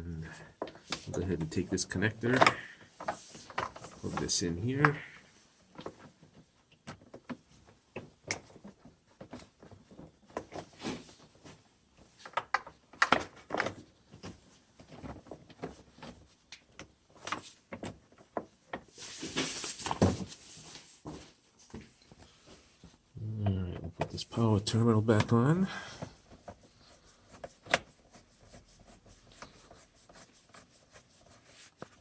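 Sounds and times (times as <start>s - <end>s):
rustling: 17.1s - 23.1s, 24.1s - 32.0s.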